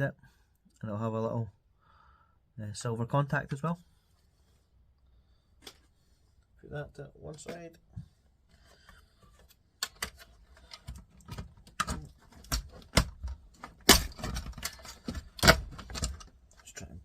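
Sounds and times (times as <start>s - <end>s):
electronics parts clicking and rattling: 8.5s - 17.0s.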